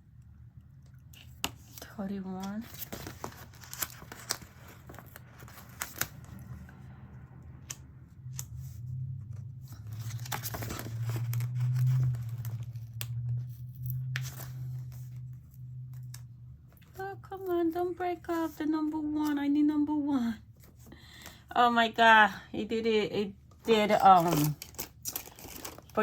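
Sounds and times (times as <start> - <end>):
low steady hum: 0.0 - 26.0
paper rustling: 1.1 - 6.7, 8.4 - 16.2, 23.6 - 26.0.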